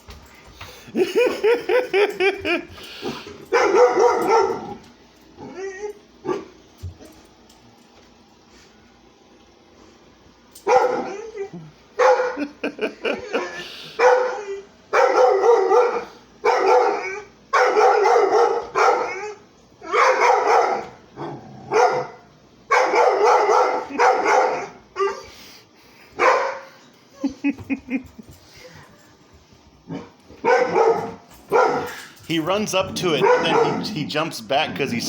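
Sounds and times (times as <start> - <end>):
dog barking: 3.5 - 4.7, 10.6 - 11.1, 12.0 - 12.4, 14.0 - 19.3, 19.9 - 21.0, 21.7 - 25.2, 26.2 - 26.6, 30.4 - 32.0, 33.0 - 34.0.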